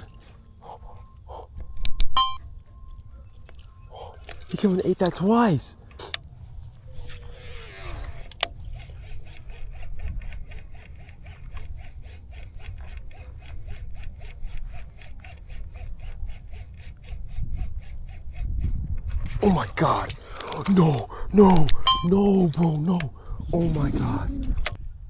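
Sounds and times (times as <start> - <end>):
reel cranking with ticking: 0.0 - 24.8
reel engaging click: 0.0 - 24.8
reel spool whirring: 0.0 - 25.0
low wind rumble: 23.0 - 25.0.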